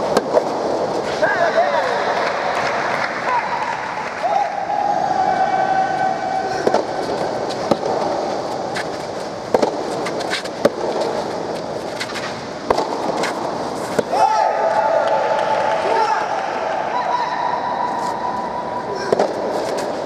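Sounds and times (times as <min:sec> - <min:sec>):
tennis ball struck by rackets: 0:00.0 - 0:01.0, 0:06.5 - 0:14.2, 0:19.0 - 0:20.0
crowd noise: 0:00.0 - 0:20.0.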